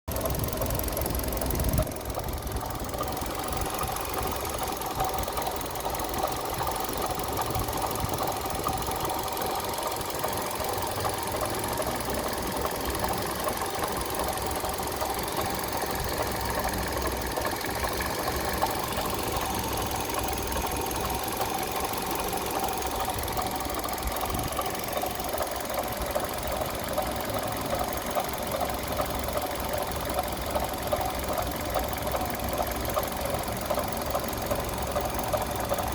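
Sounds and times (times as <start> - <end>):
car engine knocking: 0.1 - 35.9.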